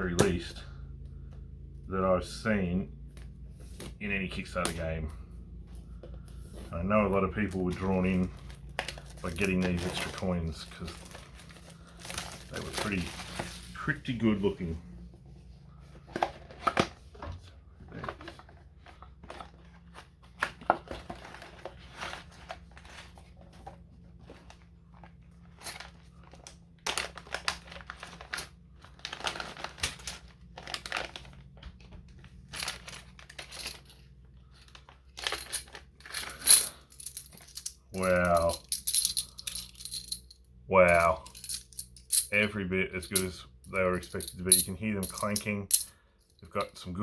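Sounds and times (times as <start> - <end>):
plastic packaging crinkling: 7.5 - 13.8, 26.9 - 31.6.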